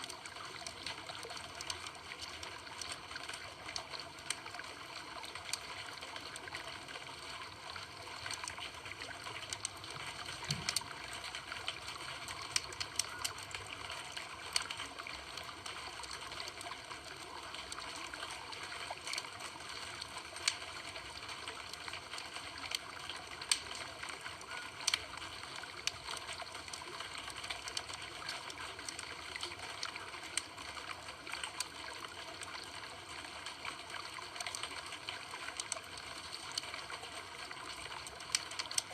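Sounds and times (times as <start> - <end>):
campfire crackling: 7.8 - 16.7, 19.9 - 30.5.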